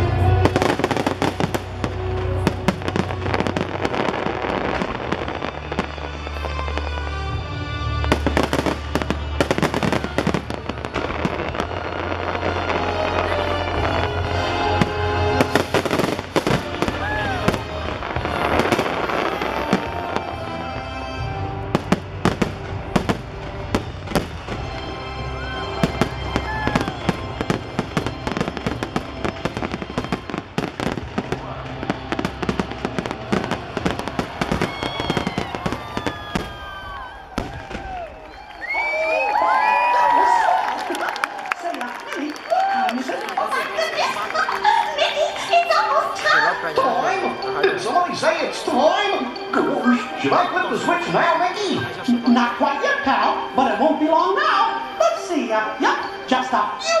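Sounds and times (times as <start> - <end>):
fireworks bangs and crackles: 0.0 - 41.5
music soundtrack: 0.0 - 57.0.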